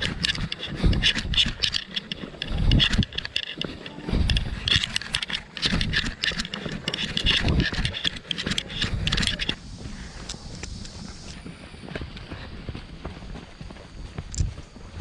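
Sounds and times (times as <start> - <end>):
footsteps crunching on gravel: 0.0 - 15.0
steady hiss: 8.6 - 11.6.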